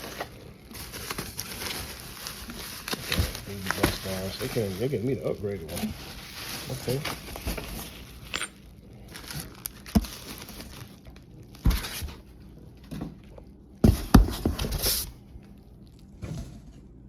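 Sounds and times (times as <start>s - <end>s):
packaging rustling and crinkling: 0.0s - 12.4s.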